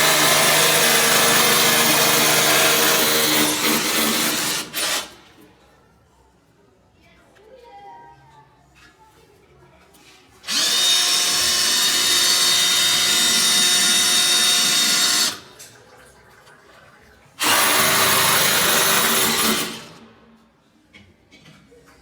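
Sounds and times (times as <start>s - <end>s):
hammer drill boring into wall: 0.0s - 5.4s, 10.4s - 15.6s, 17.4s - 20.2s.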